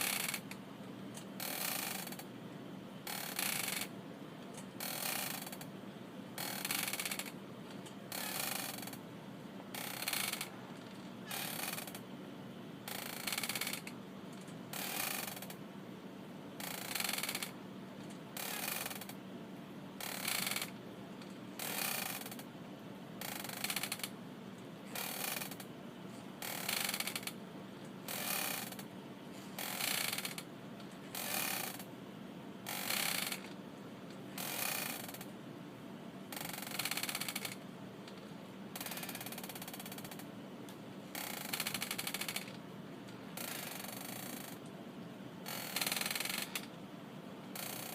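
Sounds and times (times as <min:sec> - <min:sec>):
wooden rocking chair creaking: 0:00.0 - 0:00.5, 0:01.4 - 0:02.2, 0:03.1 - 0:03.9, 0:04.8 - 0:05.7, 0:06.4 - 0:07.3, 0:08.1 - 0:09.0, 0:09.7 - 0:12.0, 0:12.9 - 0:15.6, 0:16.6 - 0:17.6, 0:18.4 - 0:19.2, 0:20.0 - 0:22.4, 0:23.2 - 0:24.1, 0:24.9 - 0:25.7, 0:26.4 - 0:27.4, 0:28.1 - 0:28.8, 0:29.6 - 0:30.5, 0:31.1 - 0:31.9, 0:32.7 - 0:33.6, 0:34.4 - 0:35.3, 0:36.3 - 0:38.2, 0:38.8 - 0:40.2, 0:41.1 - 0:42.6, 0:43.4 - 0:44.6, 0:45.5 - 0:46.8, 0:47.6 - 0:47.9.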